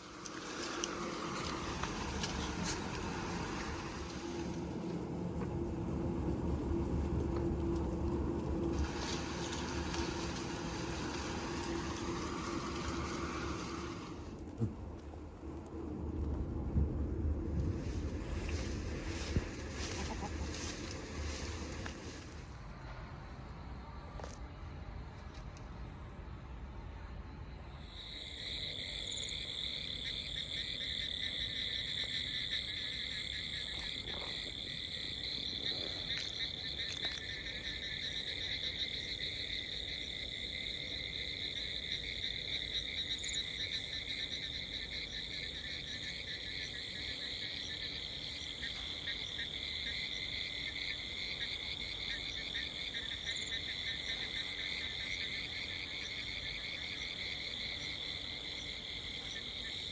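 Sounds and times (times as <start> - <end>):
chorus of pulsing animal calls: 19.7 - 21.4.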